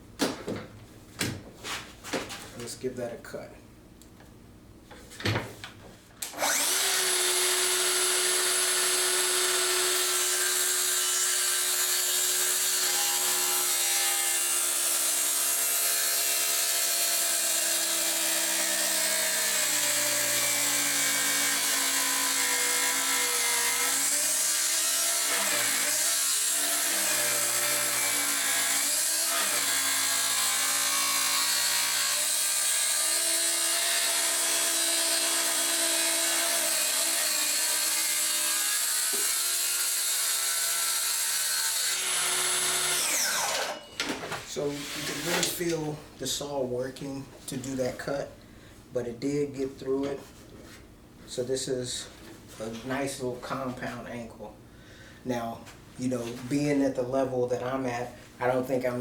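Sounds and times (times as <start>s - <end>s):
circular saw cutting wood: 6.4s - 43.8s.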